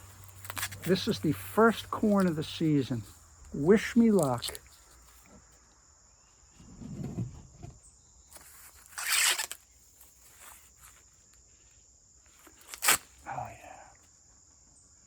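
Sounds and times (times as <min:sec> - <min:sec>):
corn husks rustling and tearing: 0:00.0 - 0:05.6, 0:08.3 - 0:11.6, 0:12.3 - 0:13.5.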